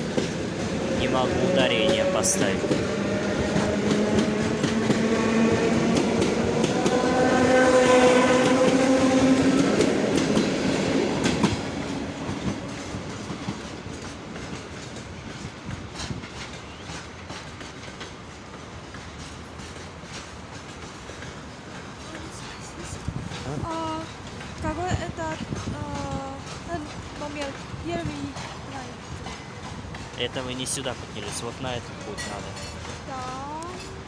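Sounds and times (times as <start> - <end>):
electric train whine: 0.0 - 15.6
train wheels clacking: 0.0 - 34.0.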